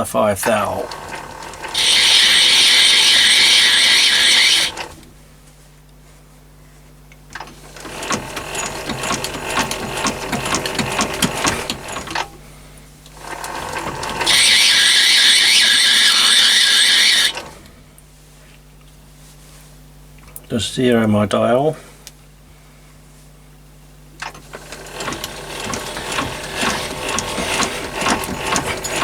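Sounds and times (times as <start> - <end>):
steady motor hum: 0.0 - 5.6, 7.2 - 18.9, 21.6 - 29.0
lathe tool cutting with hissing: 0.4 - 5.0, 13.2 - 17.6, 24.2 - 29.0
gear train clattering: 0.4 - 5.1, 7.3 - 12.4, 13.1 - 17.7, 24.2 - 29.0.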